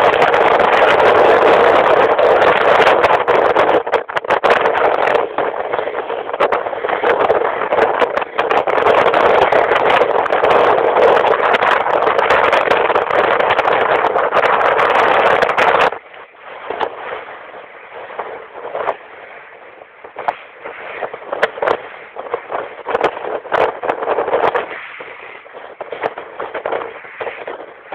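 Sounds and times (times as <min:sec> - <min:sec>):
strong wind rushing: 0:00.0 - 0:27.9.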